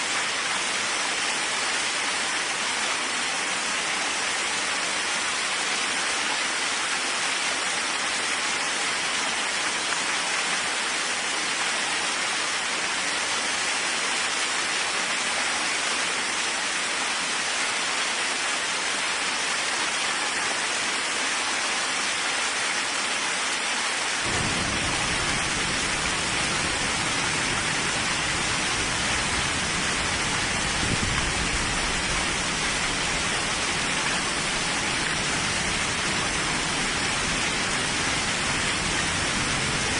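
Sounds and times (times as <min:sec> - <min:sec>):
steady rain hiss: 0:00.0 - 0:39.9
deep rumble of thunder: 0:24.3 - 0:32.8.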